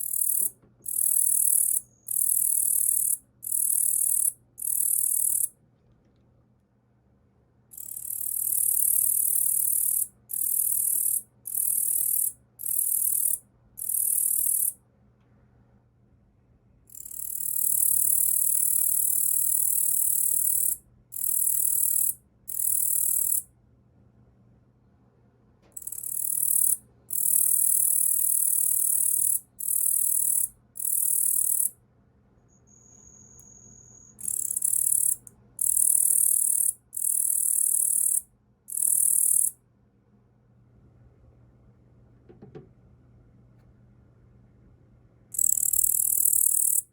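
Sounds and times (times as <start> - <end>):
katydid buzzing song: 0.0 - 5.5, 7.8 - 14.8, 16.9 - 23.4, 25.8 - 31.7, 33.4 - 39.6, 45.4 - 46.9.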